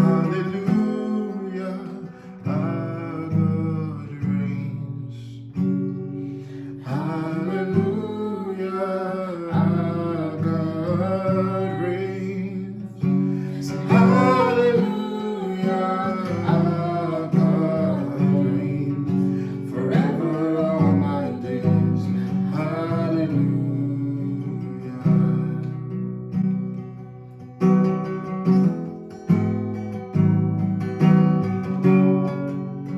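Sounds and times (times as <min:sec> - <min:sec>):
person singing: 0:00.0 - 0:05.2, 0:06.8 - 0:25.9
acoustic guitar strumming: 0:00.0 - 0:32.9.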